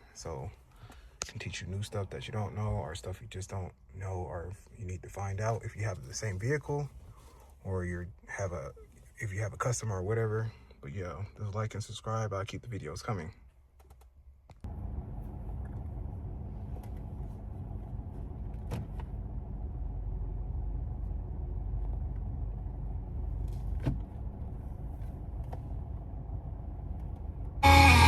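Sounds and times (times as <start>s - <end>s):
car engine rumbling: 14.6s - 28.0s.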